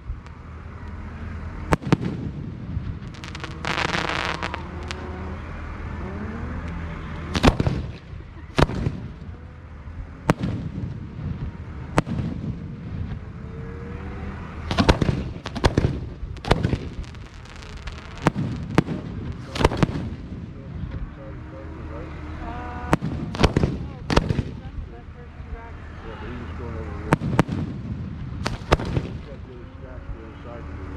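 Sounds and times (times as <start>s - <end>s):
fireworks bangs: 1.6s - 5.7s, 6.7s - 9.5s, 10.2s - 13.4s, 14.6s - 21.2s, 21.9s - 25.0s, 26.4s - 30.0s.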